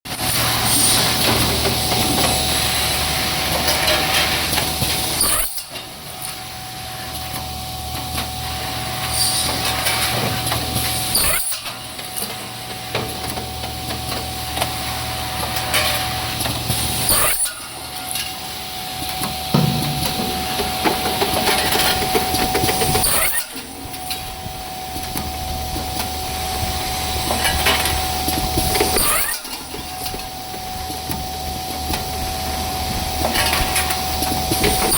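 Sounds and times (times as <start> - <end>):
high steady whine: 4.5 - 34.9
saw cutting: 11.1 - 11.7, 16.9 - 17.8, 19.7 - 23.8, 28.8 - 29.8.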